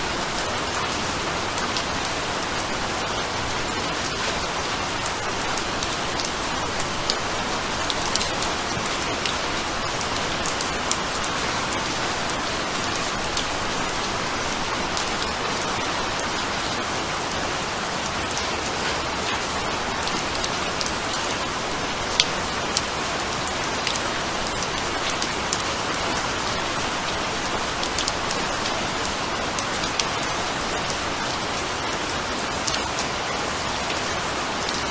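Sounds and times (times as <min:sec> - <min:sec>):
steady rain hiss: 0:00.0 - 0:34.9
raindrop ticks: 0:03.6 - 0:11.5, 0:27.2 - 0:30.2.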